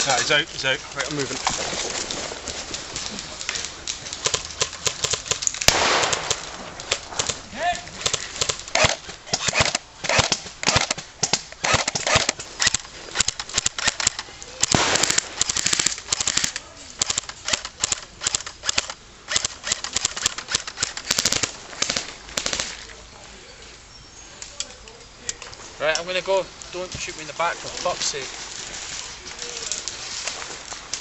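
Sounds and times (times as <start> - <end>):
airsoft gunfire bursts: 4.2 - 7.4, 8.0 - 22.7.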